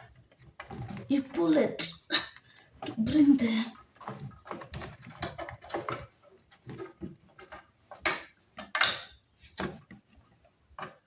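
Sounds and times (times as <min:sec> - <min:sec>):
plastic clicks and knocks: 0:03.8 - 0:11.0.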